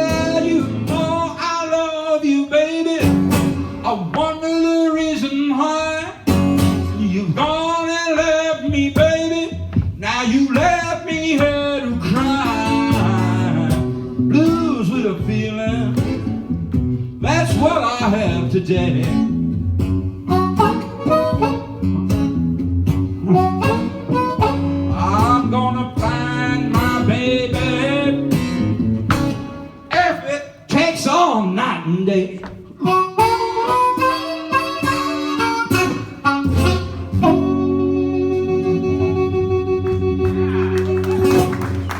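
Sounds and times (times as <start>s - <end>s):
person singing: 0.0s - 16.3s, 23.2s - 28.3s
blues harmonica wailing: 0.0s - 19.4s, 20.0s - 30.6s, 32.8s - 41.9s
acoustic guitar picking: 0.0s - 41.9s.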